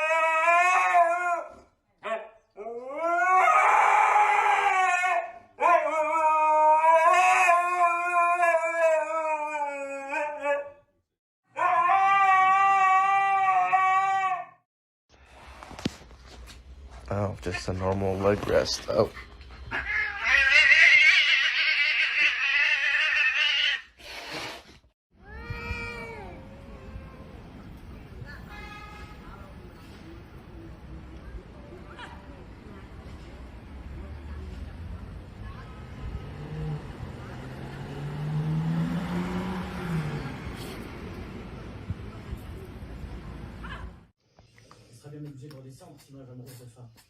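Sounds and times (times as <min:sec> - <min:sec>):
dog howling: 0:00.0 - 0:01.6, 0:02.6 - 0:10.8, 0:11.5 - 0:14.6
cat yowling: 0:11.6 - 0:14.6, 0:19.7 - 0:23.9, 0:25.2 - 0:27.2.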